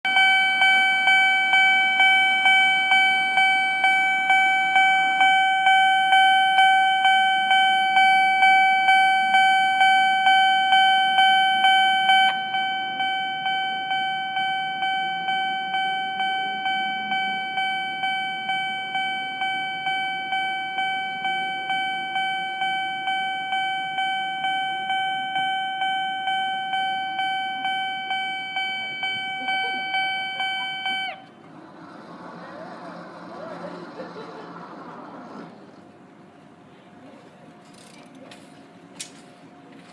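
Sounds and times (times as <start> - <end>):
steady ringing tone: 0.1 - 31.4
level-crossing alarm clanging: 0.1 - 36.6.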